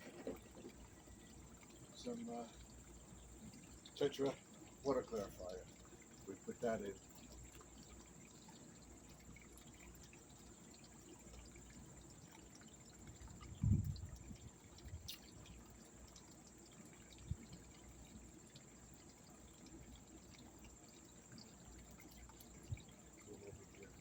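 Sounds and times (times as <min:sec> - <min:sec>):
water pouring and trickling: 0:00.0 - 0:24.0.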